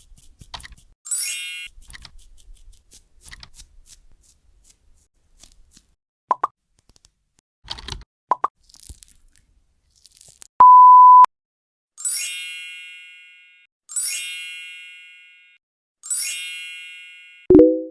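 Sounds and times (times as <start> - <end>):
loud steady beep: 10.6 - 11.3.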